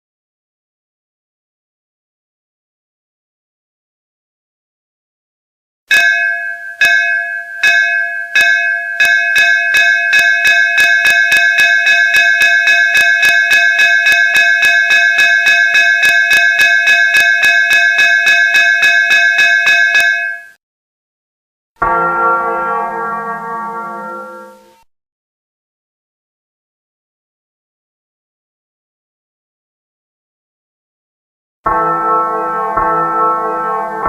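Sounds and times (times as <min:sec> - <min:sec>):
metal school bell ringing: 0:05.9 - 0:20.6, 0:21.8 - 0:24.8, 0:31.7 - 0:34.0.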